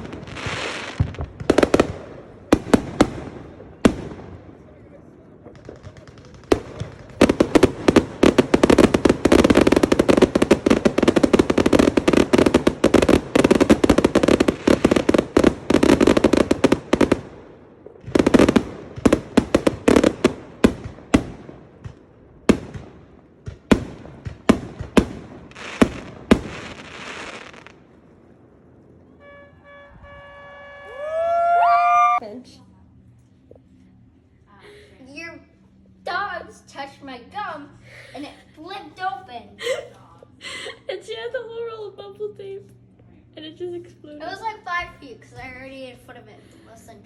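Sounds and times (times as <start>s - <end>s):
fireworks crackling and popping: 0.0s - 32.0s.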